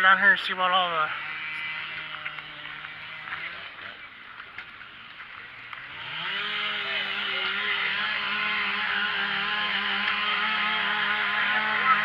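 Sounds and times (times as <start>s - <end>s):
chainsaw revving high: 0.6s - 4.2s, 4.8s - 12.0s.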